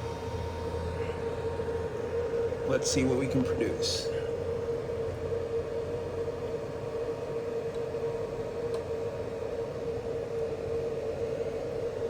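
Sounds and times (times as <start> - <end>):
fan-like hiss: 0.0 - 7.6
mid-pitched hum: 0.0 - 11.6.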